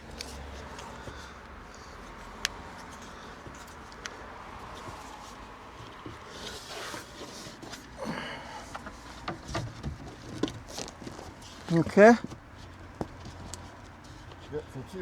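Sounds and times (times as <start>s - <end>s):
scraping and rustling: 0.0s - 15.0s
light knocks and clicks of boards: 2.4s - 14.6s.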